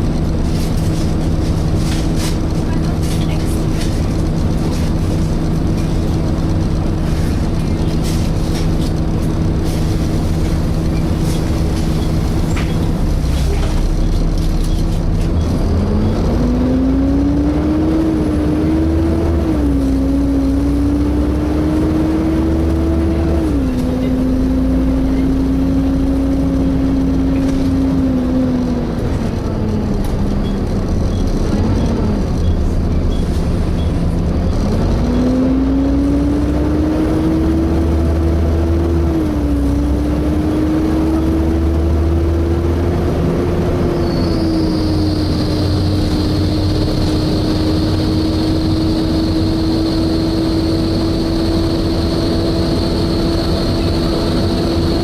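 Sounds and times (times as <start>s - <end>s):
low engine rumble: 0.0s - 55.0s
cooling fan whining drone: 35.1s - 55.0s.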